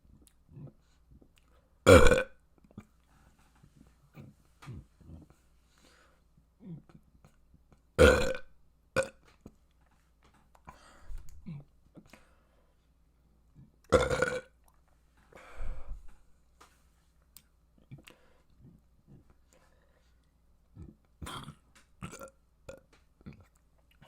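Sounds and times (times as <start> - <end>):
person burping: 1.9 - 2.4, 8.0 - 9.2, 13.9 - 14.5, 20.8 - 23.5.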